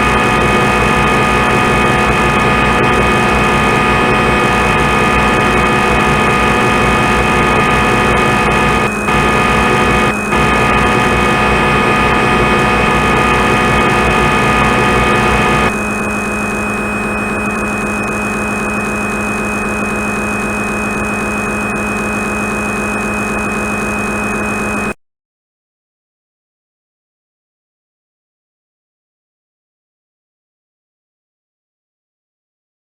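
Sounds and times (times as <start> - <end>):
synthetic spindle hum: 0.0 - 16.0
synthetic cutting whine: 0.0 - 20.0.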